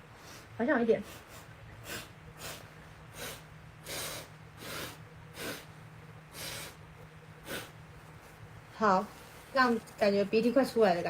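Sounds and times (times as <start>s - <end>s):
woman sniffing through nose: 0.2s - 6.8s, 7.4s - 7.8s.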